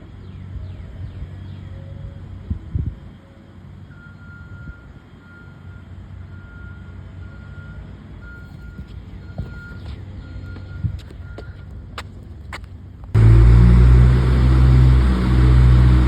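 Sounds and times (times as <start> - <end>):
diesel engine rumble: 0.0 - 16.0
vehicle backup alarm beeping: 3.8 - 11.8.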